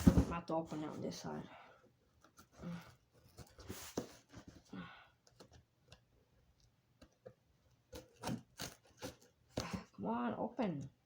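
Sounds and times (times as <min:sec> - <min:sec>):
hands rustling cardboard box: 0:00.0 - 0:00.4.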